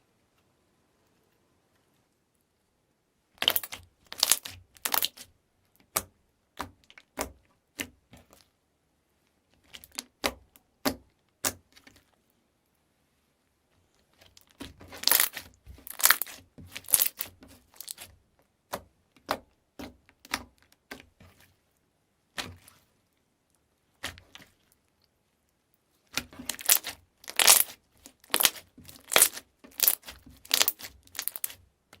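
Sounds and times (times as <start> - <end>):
slime squeezed crackling pops: 15.0 - 18.0, 26.5 - 31.6.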